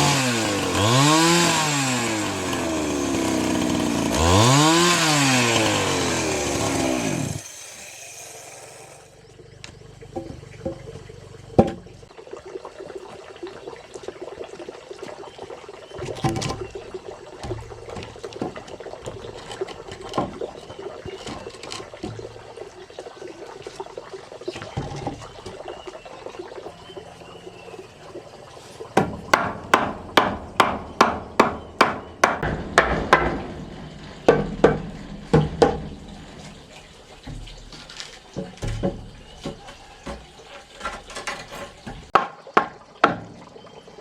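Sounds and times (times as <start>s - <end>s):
liquid sloshing and pouring: 10.2s - 30.6s, 32.4s - 44.0s
sharp knocks: 29.0s - 36.6s.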